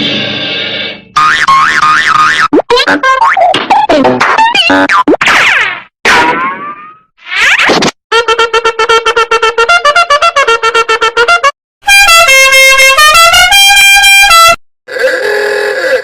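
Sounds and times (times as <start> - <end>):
bright horn-like melody: 8.1 - 14.6.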